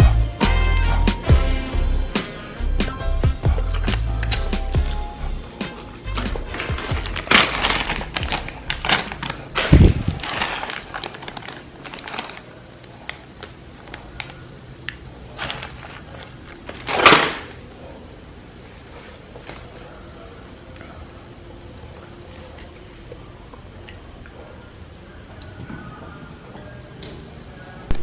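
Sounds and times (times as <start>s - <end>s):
plastic packaging crinkling: 3.6s - 17.6s.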